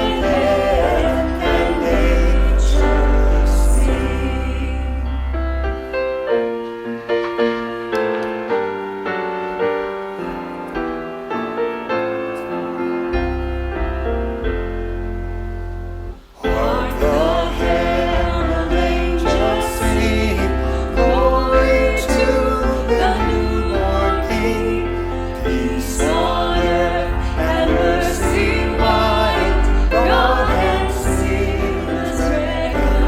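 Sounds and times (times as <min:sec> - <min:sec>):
deep held bass: 0:00.0 - 0:05.8, 0:13.2 - 0:33.0
voices singing: 0:00.0 - 0:06.0, 0:16.2 - 0:33.0
piano notes: 0:00.0 - 0:33.0.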